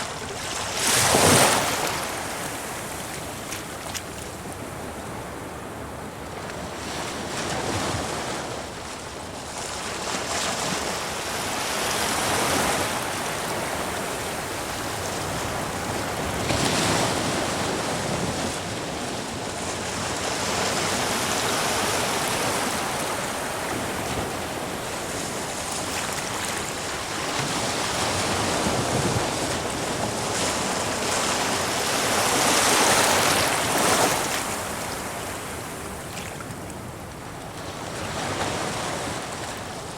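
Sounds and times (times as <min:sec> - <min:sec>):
waves breaking against rocks: 0:00.0 - 0:04.8.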